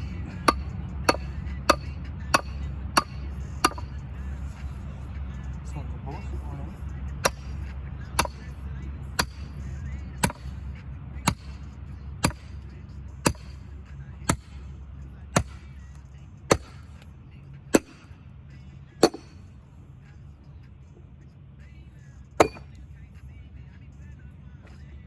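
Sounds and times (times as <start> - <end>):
axe chopping wood: 0.0 - 3.9, 7.2 - 7.5, 8.2 - 8.5, 9.2 - 9.5, 10.2 - 10.5, 11.3 - 11.6, 12.2 - 12.5, 13.2 - 13.6, 14.3 - 14.6, 15.4 - 15.7, 16.5 - 16.9, 17.7 - 18.1, 19.0 - 19.4, 22.4 - 22.8
steady low hum: 0.0 - 25.0.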